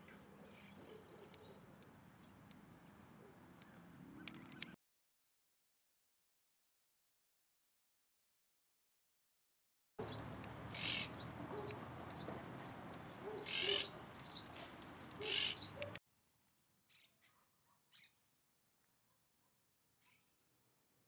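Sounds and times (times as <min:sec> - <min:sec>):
birds screeching calls: 0:10.0 - 0:16.0.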